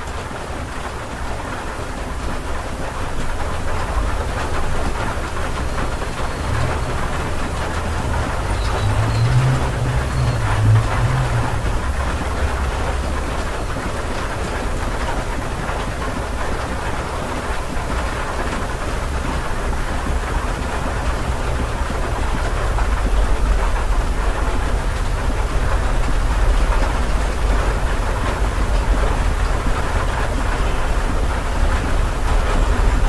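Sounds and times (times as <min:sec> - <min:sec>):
steady rain patter: 0:00.0 - 0:33.0
deep low rumble: 0:03.9 - 0:13.6.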